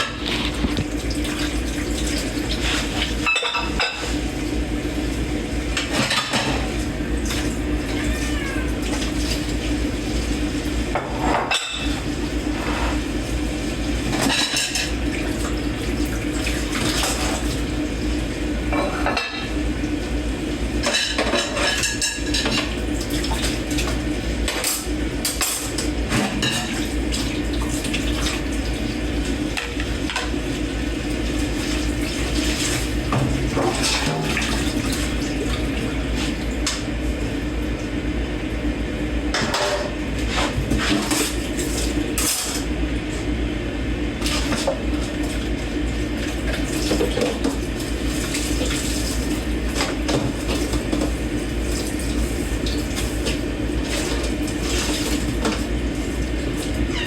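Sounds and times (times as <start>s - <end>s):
dishes and cutlery clinking: 3.2s - 4.0s.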